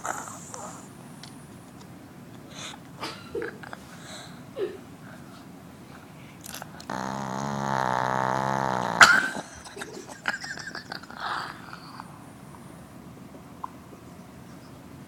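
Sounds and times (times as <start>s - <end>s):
dog snoring: 0.0s - 0.9s, 6.4s - 9.5s
dog snuffling: 6.5s - 9.0s.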